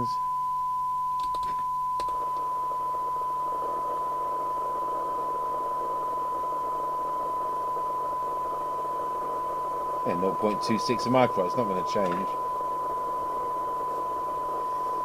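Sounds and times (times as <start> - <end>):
steady test tone: 0.0 - 15.0
clicks: 1.2 - 2.5, 11.9 - 12.4
radio hiss: 2.2 - 15.0.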